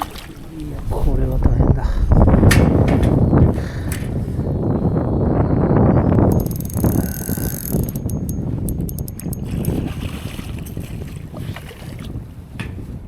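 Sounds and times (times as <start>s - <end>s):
wind buffeting microphone: 0.0s - 13.0s
sharp clicks: 6.2s - 9.8s.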